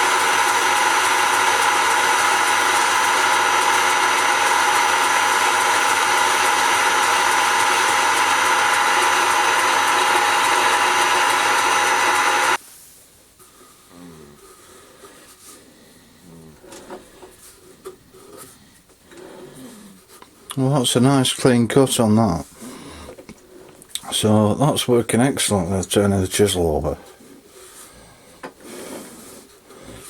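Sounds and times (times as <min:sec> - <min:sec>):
lathe chisel cutting spinning wood: 0:00.0 - 0:12.6.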